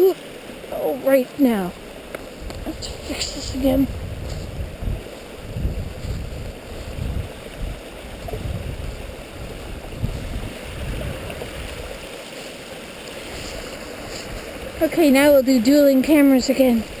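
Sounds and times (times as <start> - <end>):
stream rushing: 0.0 - 17.0
low rumbles on microphone: 2.4 - 12.0.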